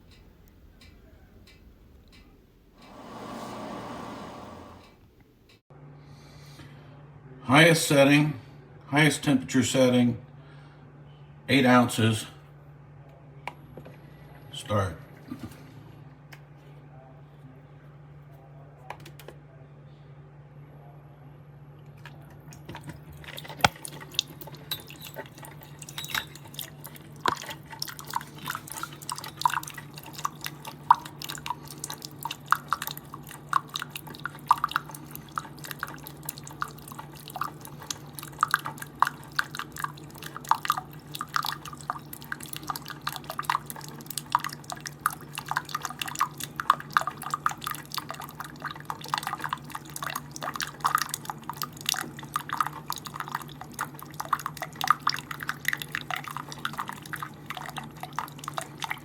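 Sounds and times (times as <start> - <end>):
coffee machine humming: 2.8 - 5.0
coffee dripping into mug: 22.0 - 59.0.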